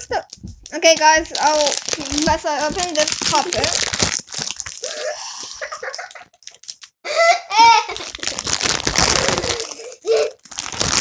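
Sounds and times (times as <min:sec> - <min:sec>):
plastic packaging crinkling: 0:00.0 - 0:07.0, 0:07.6 - 0:11.0
child giggling: 0:04.9 - 0:06.4, 0:07.1 - 0:08.2.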